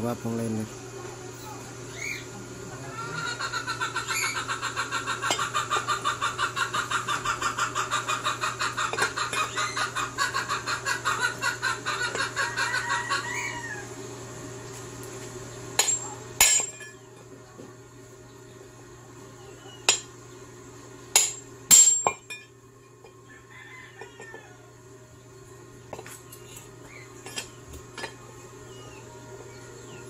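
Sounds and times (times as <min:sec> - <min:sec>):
chicken clucking: 0:02.8 - 0:13.8.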